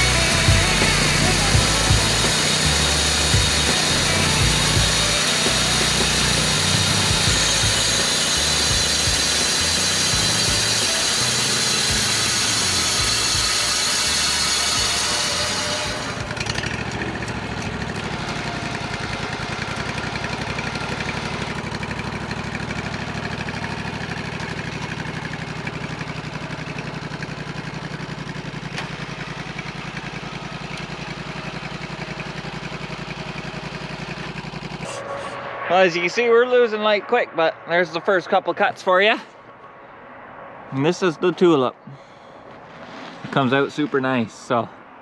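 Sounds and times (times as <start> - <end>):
bandsaw blade cutting log: 0.0 - 35.2
sawmill engine running: 0.0 - 39.5.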